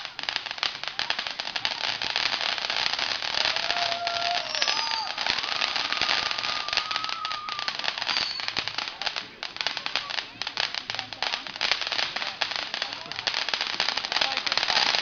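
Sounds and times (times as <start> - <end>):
fireworks crackling: 0.0 - 15.0
firework whistles: 3.1 - 8.8.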